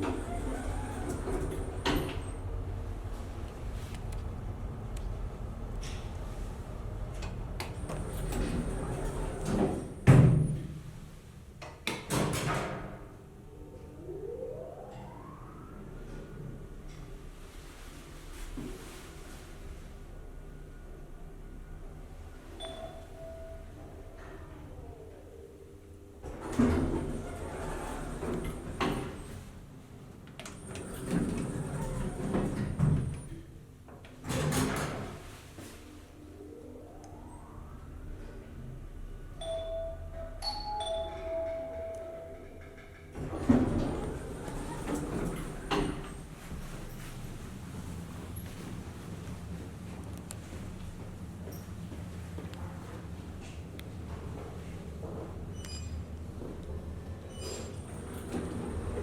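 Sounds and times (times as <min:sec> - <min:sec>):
elevator doors sliding: 0:00.0 - 0:59.0
rising whine: 0:13.0 - 0:18.6, 0:35.6 - 0:40.4
faint high whine: 0:13.0 - 0:27.6, 0:35.2 - 0:42.7
elevator machinery clunks: 0:39.4 - 0:46.4.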